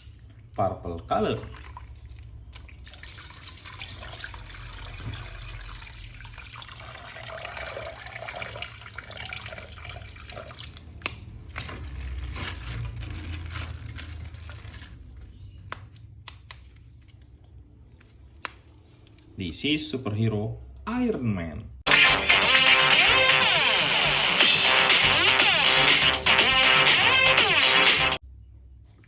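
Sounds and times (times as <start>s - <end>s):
tap water running and splashing: 1.5s - 11.1s.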